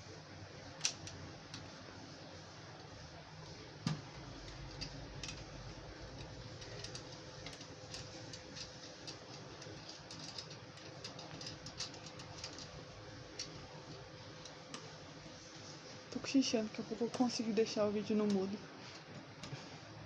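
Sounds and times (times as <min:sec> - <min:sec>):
faint steady hum: 0:00.0 - 0:20.0
parts being handled clicking: 0:00.8 - 0:01.7, 0:03.8 - 0:15.0.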